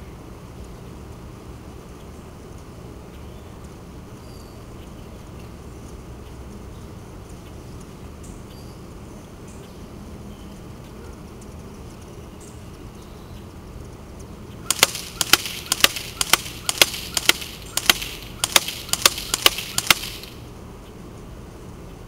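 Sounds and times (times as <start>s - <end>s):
airsoft gun single shots: 14.7s - 20.4s.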